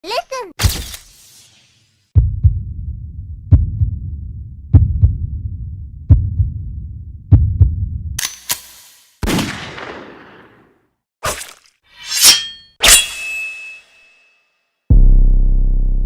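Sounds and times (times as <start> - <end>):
heartbeat thumps: 2.2 - 8.2.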